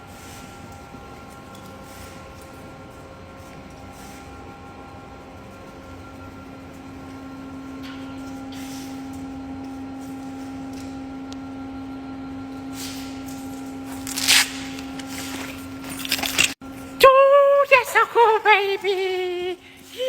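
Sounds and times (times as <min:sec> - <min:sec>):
steady mechanical hum: 0:00.0 - 0:20.0
dog scuffing and rustling: 0:13.9 - 0:16.6.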